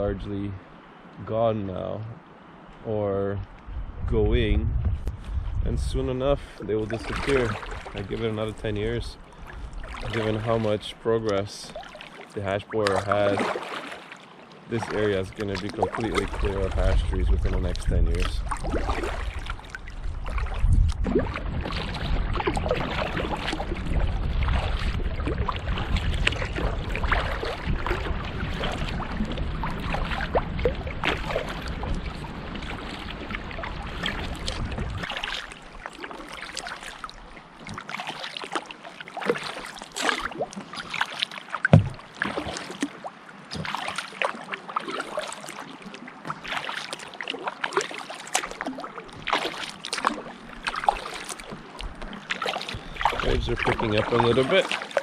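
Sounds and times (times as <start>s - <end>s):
low rumble: 3.5s - 6.5s
water slapping against hull: 3.5s - 55.0s
paddle strokes splashing: 6.0s - 55.0s.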